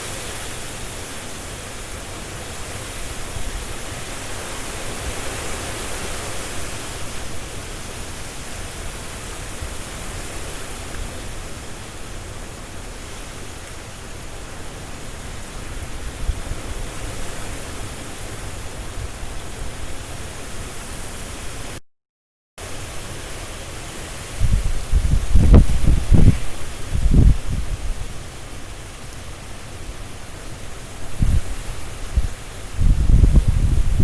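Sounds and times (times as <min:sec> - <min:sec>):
leaves rustling: 0:00.0 - 0:21.8, 0:22.6 - 0:34.0
wind through trees: 0:00.0 - 0:21.8, 0:22.6 - 0:34.0.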